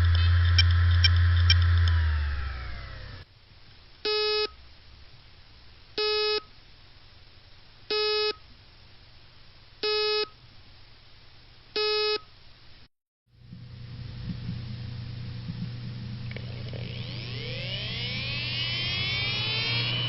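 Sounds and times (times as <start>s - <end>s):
faint hum: 0.0s - 20.0s
hard drive beeping: 15.5s - 20.0s.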